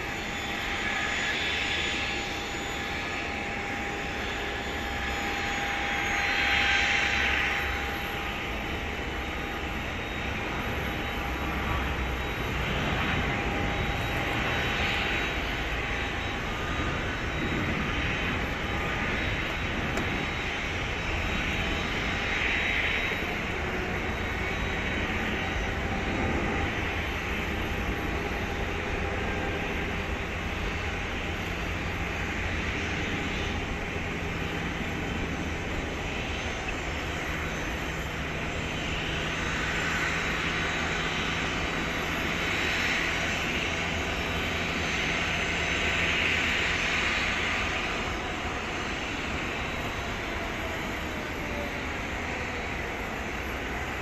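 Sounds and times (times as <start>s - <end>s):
jet engines at taxi power: 0.0s - 54.0s.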